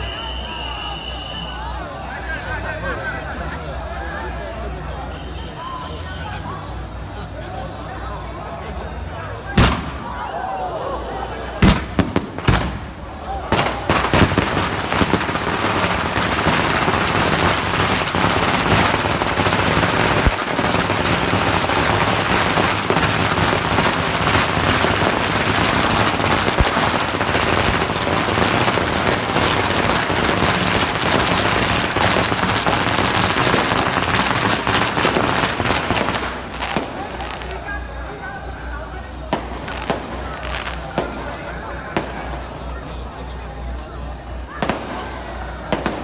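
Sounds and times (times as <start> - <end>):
firecrackers crackling: 8.9 - 46.0
loud firecracker bang: 9.5 - 10.4, 11.6 - 37.6, 39.3 - 42.4, 44.5 - 46.0.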